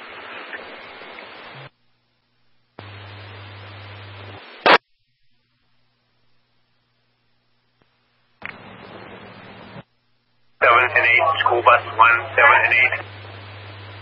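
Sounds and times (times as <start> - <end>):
radio scanner static hiss: 0.0 - 1.8, 2.7 - 14.0
low hum: 0.8 - 14.0.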